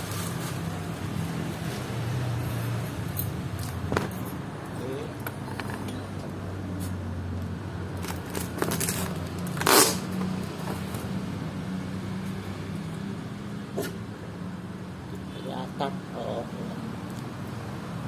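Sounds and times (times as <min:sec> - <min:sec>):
package handling clicks and rustles: 0:08.0 - 0:09.7
packaging ripping: 0:08.0 - 0:10.1.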